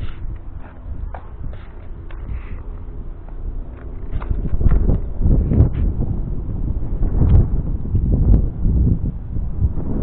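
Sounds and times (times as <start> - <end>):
wind rumbling on microphone: 0.0 - 10.0.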